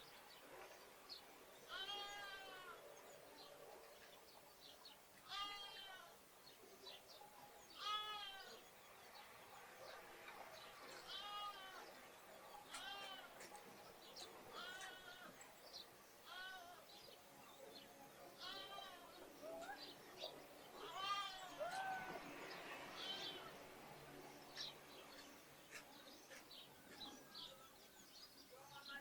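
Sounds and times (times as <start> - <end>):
sparrows chirping faintly: 0.0 - 29.0
lambs bleating: 1.7 - 2.8, 5.2 - 6.1, 7.8 - 8.6, 11.0 - 11.8, 12.7 - 13.4, 14.5 - 15.4, 20.8 - 21.9.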